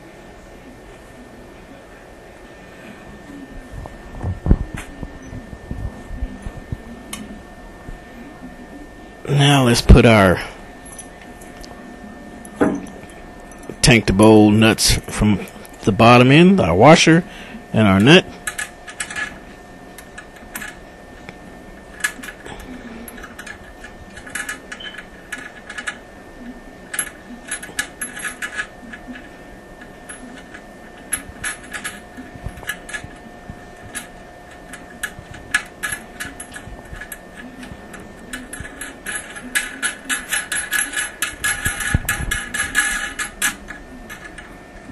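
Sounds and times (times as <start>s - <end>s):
metal bolts and nuts clinking: 34.7s - 44.5s.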